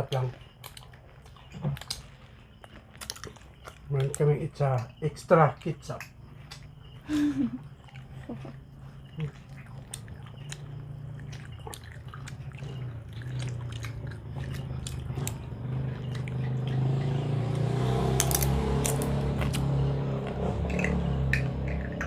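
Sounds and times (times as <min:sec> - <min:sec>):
crisp clicks and smacking: 0:00.0 - 0:04.8, 0:09.2 - 0:16.8, 0:17.6 - 0:22.0
chewing and biting food: 0:00.0 - 0:22.0.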